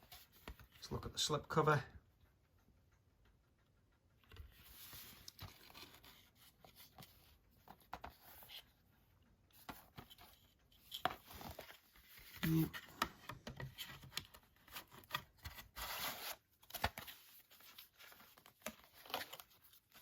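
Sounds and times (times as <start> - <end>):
cardboard rustling and scraping: 9.6 - 20.0.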